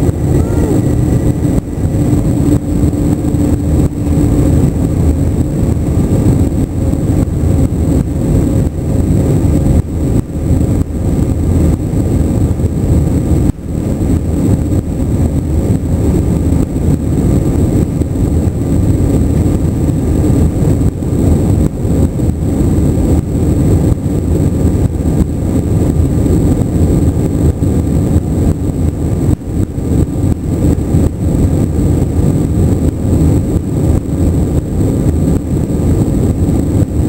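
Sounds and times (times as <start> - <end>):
jet engine cabin roar: 0.0 - 37.0.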